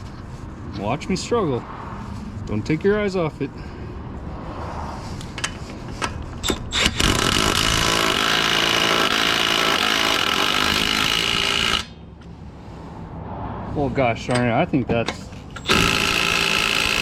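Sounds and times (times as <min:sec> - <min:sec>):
impact wrench hammering: 0:05.4 - 0:12.0, 0:14.3 - 0:17.0.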